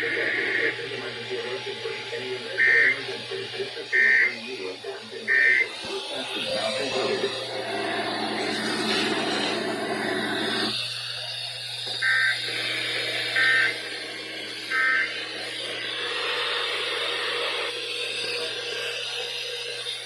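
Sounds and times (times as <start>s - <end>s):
radio hiss: 0.0s - 9.6s
shrill two-tone digital chirps: 6.4s - 9.6s.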